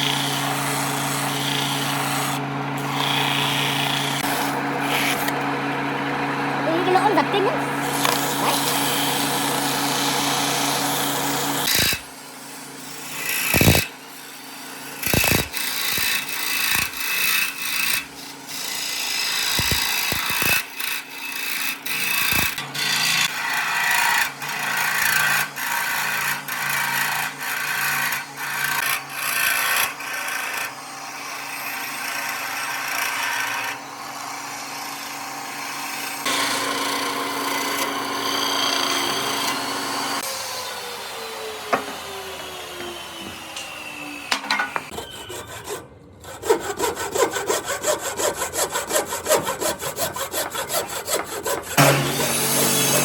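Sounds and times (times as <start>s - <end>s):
power tool motor hum: 0.0s - 14.0s, 14.9s - 17.9s, 19.3s - 30.8s, 31.5s - 45.0s
scraping strokes on wood: 41.7s - 53.0s.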